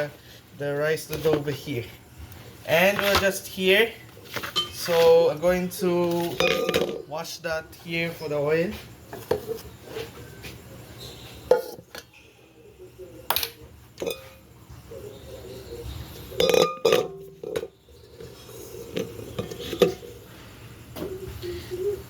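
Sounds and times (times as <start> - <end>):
clinking dishes and cutlery: 6.2 - 7.0, 14.0 - 14.4, 16.4 - 20.1.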